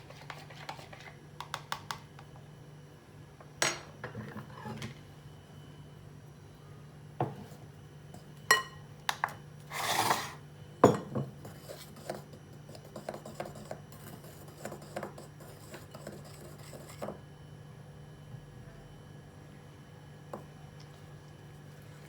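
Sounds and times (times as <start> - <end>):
utensils and bowl clinking: 8.5 - 8.8.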